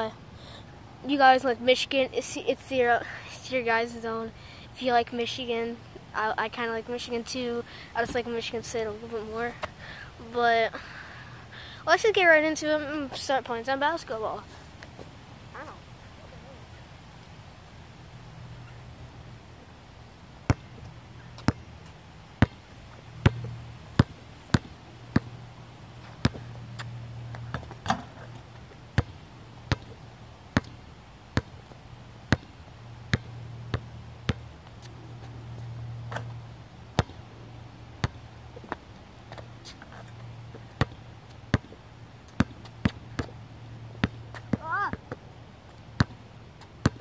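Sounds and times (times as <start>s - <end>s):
low steady hum: 0.0s - 47.0s
basketball bouncing on court: 22.4s - 22.6s, 23.2s - 25.4s, 26.2s - 28.3s, 29.0s - 30.0s, 32.3s - 32.5s, 33.1s - 34.4s, 37.0s - 37.2s, 40.8s - 43.3s, 44.0s - 45.1s.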